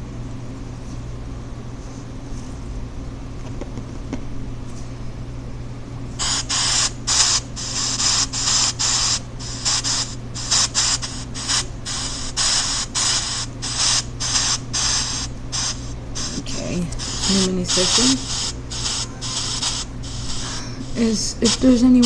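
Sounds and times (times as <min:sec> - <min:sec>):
steady low hum: 0:00.0 - 0:22.0
chopped hiss bursts: 0:06.2 - 0:22.0.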